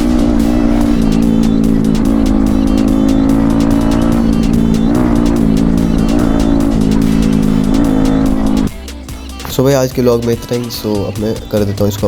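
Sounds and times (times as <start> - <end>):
sustained low drone: 0.0 - 8.8
music with fast beat: 0.0 - 12.0.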